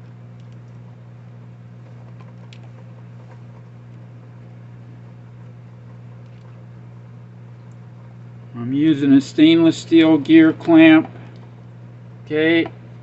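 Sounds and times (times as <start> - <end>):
low machine hum: 0.0 - 13.0
faint small clicks: 0.4 - 0.8.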